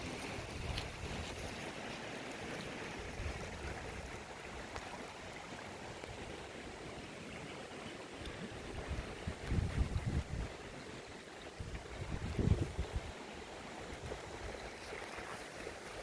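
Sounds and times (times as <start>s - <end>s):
floodwater rushing: 0.0s - 16.0s
wind rumble on microphone: 3.0s - 4.7s, 8.2s - 10.8s, 11.4s - 13.2s.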